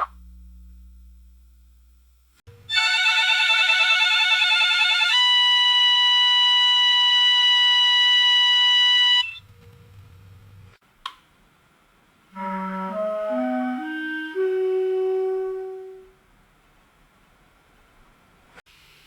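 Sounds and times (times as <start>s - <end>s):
faint low hum: 0.0s - 2.7s
click: 11.0s - 11.2s.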